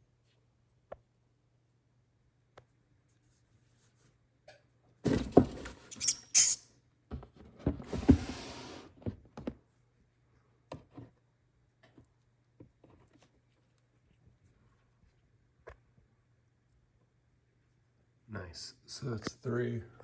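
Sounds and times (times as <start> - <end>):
sharp knocks and bumps: 5.1 - 5.9
scraping or rustling: 7.4 - 9.0.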